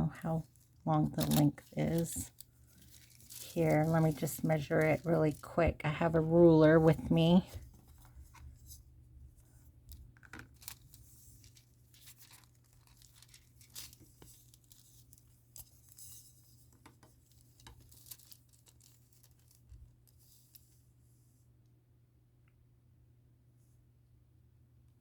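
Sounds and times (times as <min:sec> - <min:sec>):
foil crinkling and rustling: 0:00.2 - 0:08.7, 0:10.0 - 0:20.7.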